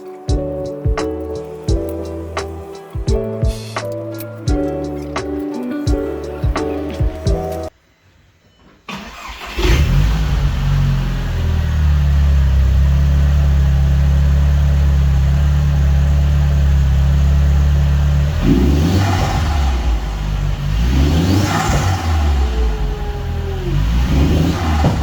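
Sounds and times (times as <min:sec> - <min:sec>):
car engine starting and idling: 0:08.9 - 0:25.0
engine revving: 0:09.2 - 0:25.0.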